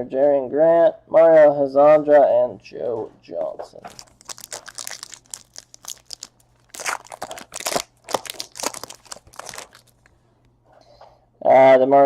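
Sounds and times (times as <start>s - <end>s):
plastic wrapper tearing and crinkling: 3.8s - 10.1s.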